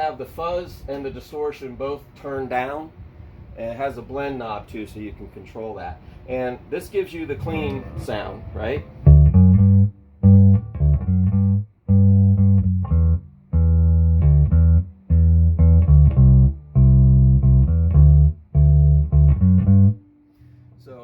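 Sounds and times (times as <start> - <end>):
electric bass guitar riff: 7.4 - 20.8.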